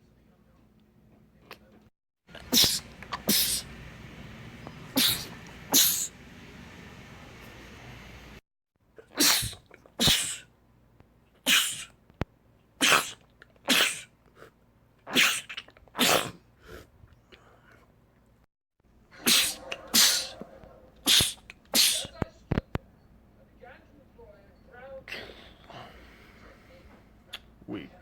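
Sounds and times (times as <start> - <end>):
man sneezing: 2.4 - 3.6, 5.0 - 6.1, 9.2 - 10.5, 11.5 - 11.9, 12.8 - 14.1, 15.1 - 16.4, 19.2 - 20.4, 21.0 - 22.1.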